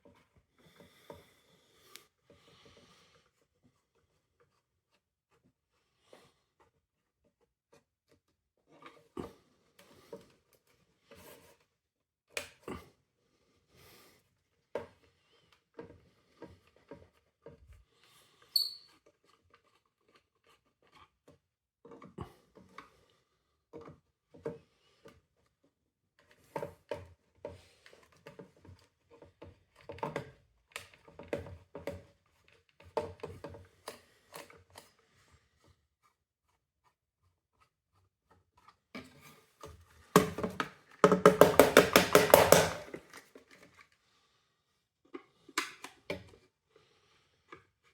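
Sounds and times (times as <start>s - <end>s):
brief high squeak: 18.6s - 18.9s.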